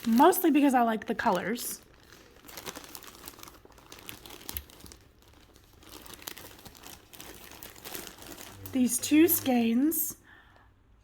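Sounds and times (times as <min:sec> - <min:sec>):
packaging crinkling: 0:00.0 - 0:09.9.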